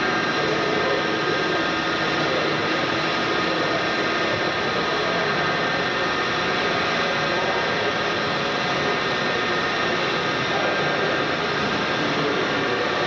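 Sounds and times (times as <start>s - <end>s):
machine whir with constant tones: 0.0s - 13.0s.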